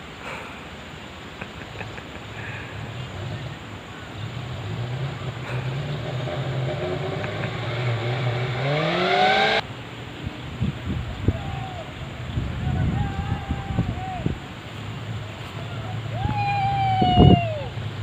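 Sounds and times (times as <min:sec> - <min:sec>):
jeep engine revving under load: 0:02.3 - 0:09.6.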